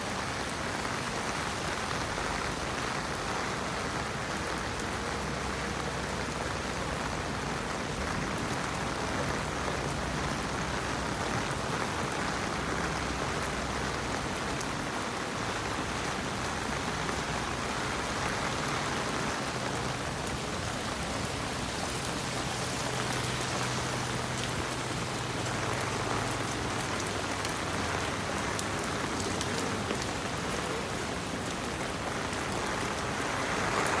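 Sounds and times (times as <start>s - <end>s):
steady rain falling: 0.0s - 34.0s
raindrops ticking: 15.6s - 34.0s.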